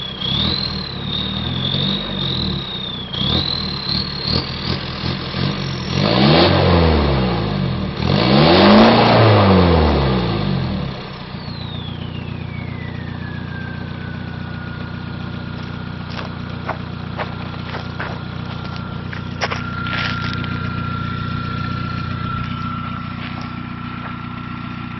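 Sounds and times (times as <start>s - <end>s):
turbo whistle whine: 0.0s - 4.8s, 11.1s - 24.9s
diesel engine revving and idling: 0.0s - 24.9s.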